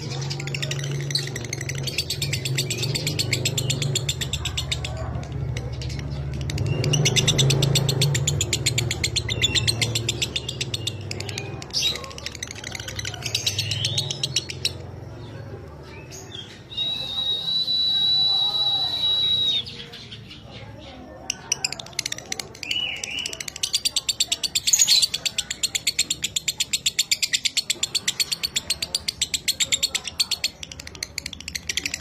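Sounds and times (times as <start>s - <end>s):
high whistle-like tone: 16.8s - 19.7s
lovebird chattering: 18.6s - 32.0s.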